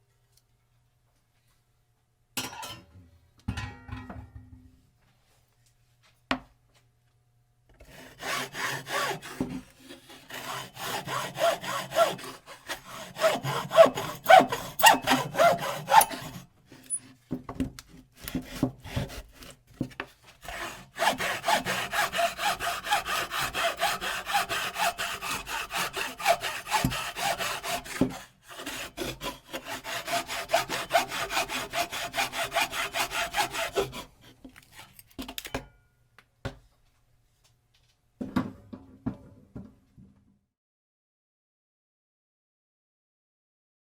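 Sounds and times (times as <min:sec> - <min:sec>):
hand saw sawing: 0:07.8 - 0:17.2, 0:17.9 - 0:35.0.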